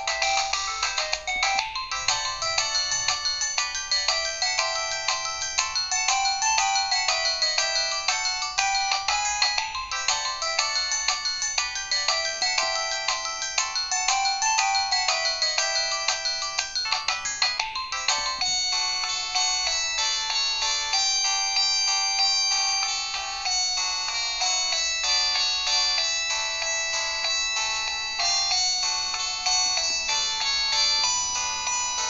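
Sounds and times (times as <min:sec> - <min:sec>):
polyphonic phone ringtone: 0:00.0 - 0:32.0.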